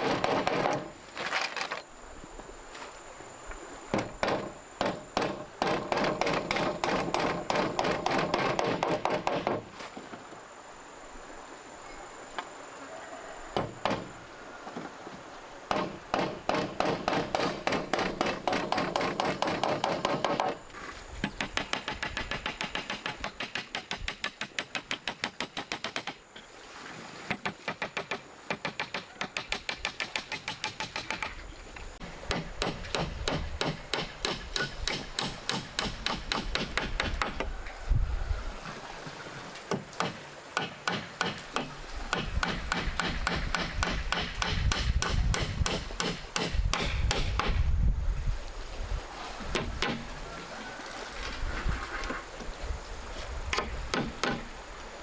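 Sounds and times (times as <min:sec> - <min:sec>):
rapid strikes on wood: 0:03.9 - 0:09.7, 0:15.7 - 0:20.6, 0:21.2 - 0:26.2, 0:27.3 - 0:31.4, 0:32.2 - 0:37.5, 0:39.7 - 0:47.6.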